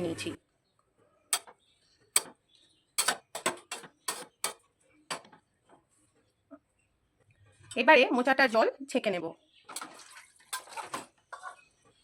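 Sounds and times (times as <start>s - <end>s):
utensils clinking against pot: 3.0s - 5.3s.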